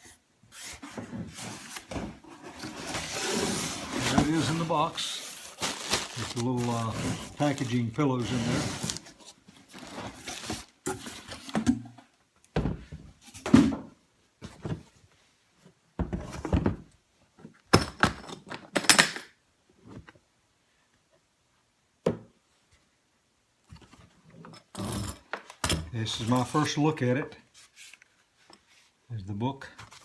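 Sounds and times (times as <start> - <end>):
packaging rustling and knocking: 1.4 - 11.6.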